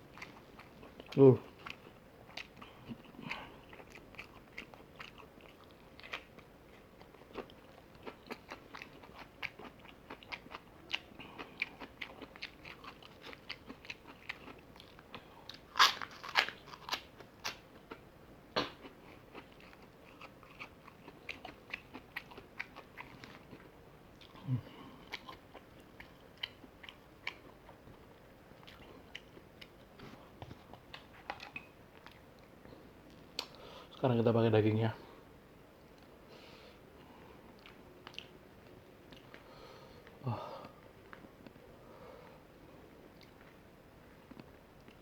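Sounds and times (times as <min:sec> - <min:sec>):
person chewing crunchy food: 0:00.0 - 0:33.6, 0:37.5 - 0:39.4.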